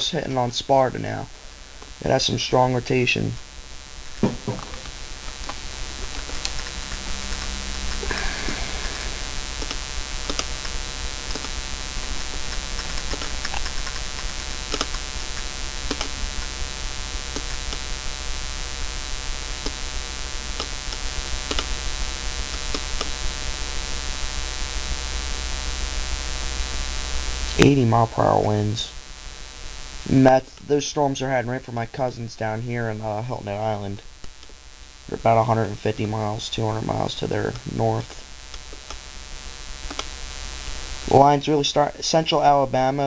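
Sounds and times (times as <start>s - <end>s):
mains hum: 0.0s - 43.0s
faint clicks: 12.3s - 16.2s, 39.8s - 40.2s.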